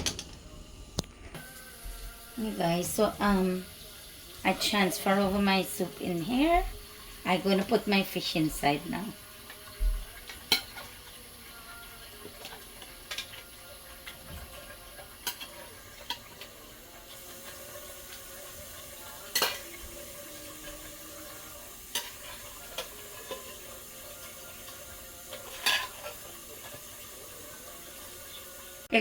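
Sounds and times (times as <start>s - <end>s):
utensils knocking on pot: 10.1s - 11.0s, 19.2s - 21.0s, 21.9s - 26.8s.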